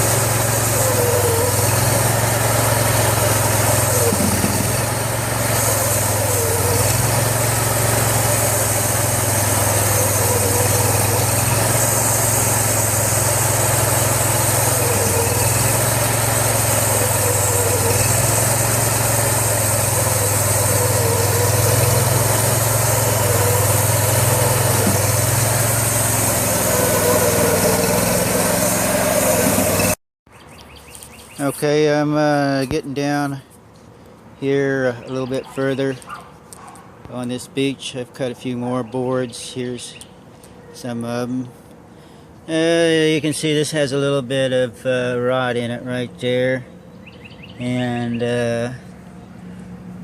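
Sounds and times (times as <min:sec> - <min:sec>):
band blade sawing log: 0:00.0 - 0:30.0
small gas engine running: 0:00.0 - 0:30.0.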